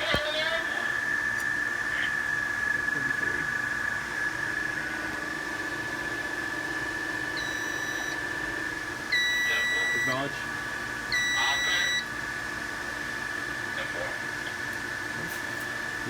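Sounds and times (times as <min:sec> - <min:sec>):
low steady hum: 0:00.0 - 0:16.0
alarm panel buzzer: 0:04.4 - 0:13.5.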